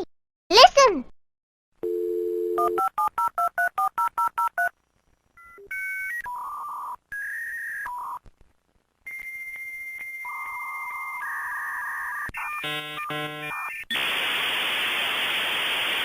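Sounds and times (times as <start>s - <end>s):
touch-tone dialing beeps: 1.9s - 4.7s.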